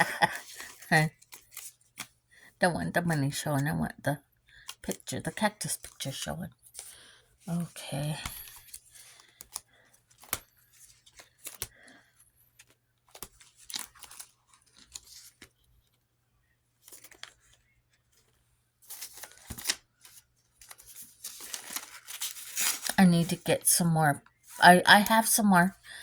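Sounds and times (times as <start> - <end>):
paper and plastic rustling: 0.0 - 2.2, 4.6 - 16.0, 16.8 - 26.0.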